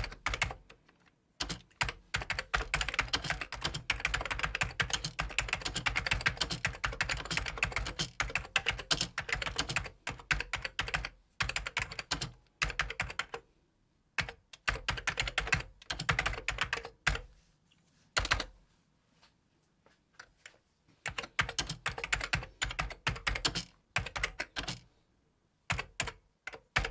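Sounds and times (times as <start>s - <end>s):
typing on computer keyboard: 0.0s - 13.5s, 14.2s - 17.3s, 18.2s - 18.6s, 21.0s - 24.9s, 25.7s - 26.9s.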